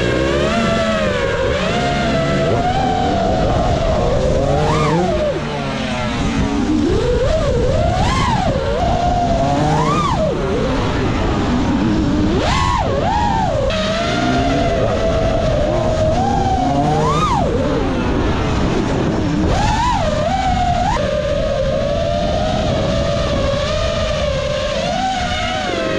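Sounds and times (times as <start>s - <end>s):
drone motors whining: 0.0s - 25.9s.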